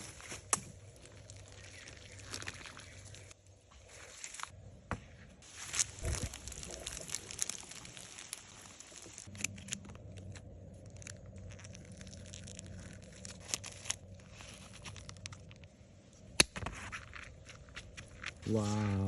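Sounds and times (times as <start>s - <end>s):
crinkling rustling handling noises: 5.4s - 15.7s.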